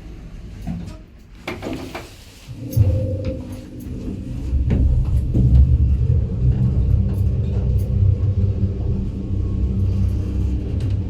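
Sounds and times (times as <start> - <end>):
lift low rumble: 2.4 - 11.0.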